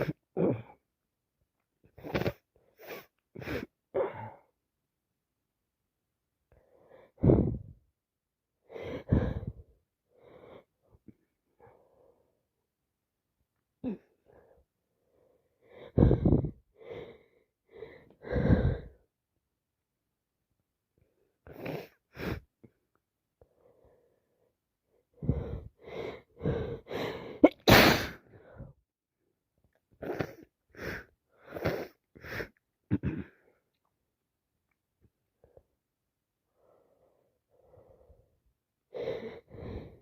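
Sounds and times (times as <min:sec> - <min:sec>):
woman sneezing: 0:27.4 - 0:28.2.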